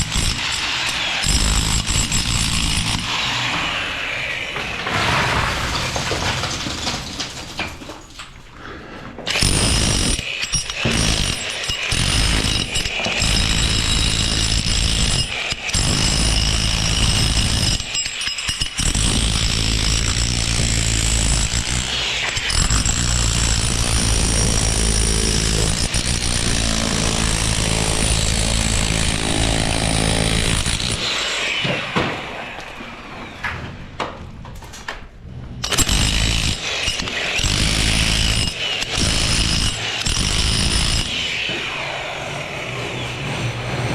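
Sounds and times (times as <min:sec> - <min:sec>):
power tool whining: 0:09.3 - 0:33.7, 0:35.6 - 0:43.9.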